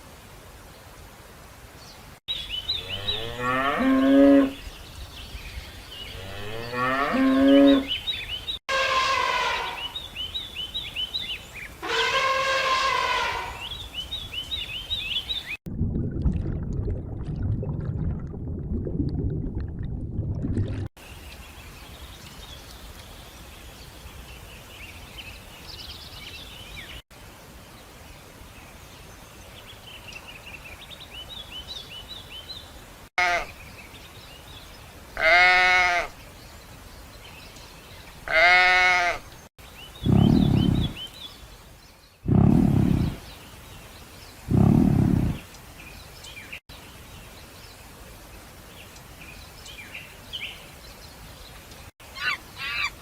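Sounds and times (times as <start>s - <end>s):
sheep bleating: 33.2s - 33.5s, 35.2s - 36.1s, 38.3s - 39.2s.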